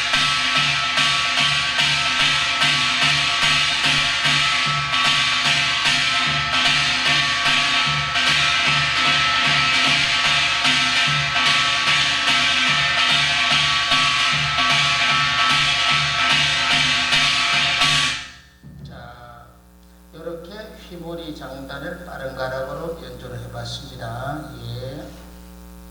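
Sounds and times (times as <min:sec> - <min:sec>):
drum playing fast rhythm: 0:00.0 - 0:19.6
steady ringing tones: 0:00.0 - 0:25.9.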